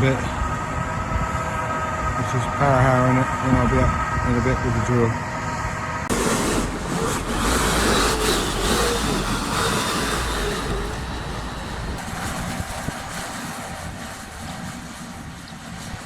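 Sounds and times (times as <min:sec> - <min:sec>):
tractor working a power harrow: 0:06.1 - 0:14.7.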